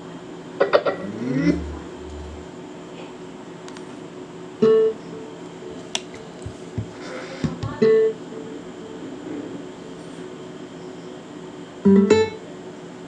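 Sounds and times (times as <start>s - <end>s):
plucked guitar notes ringing: 0.9s - 2.5s.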